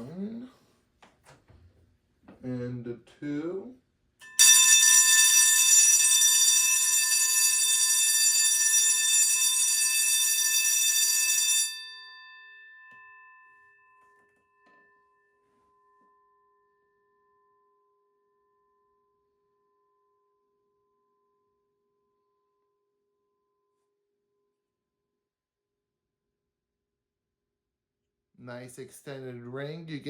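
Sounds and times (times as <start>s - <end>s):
electric bell ringing: 4.2s - 16.8s
bell shell ringing tone: 4.2s - 17.8s.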